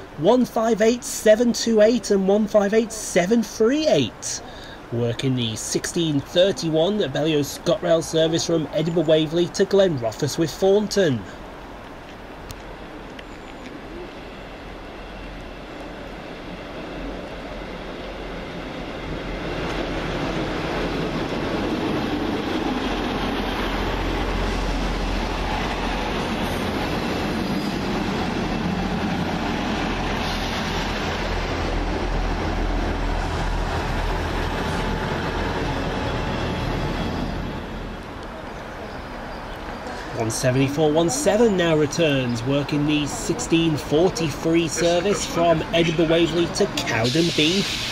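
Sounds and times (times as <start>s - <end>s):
diesel train engines running: 0.0s - 47.9s
train wheels on rails: 11.2s - 47.9s.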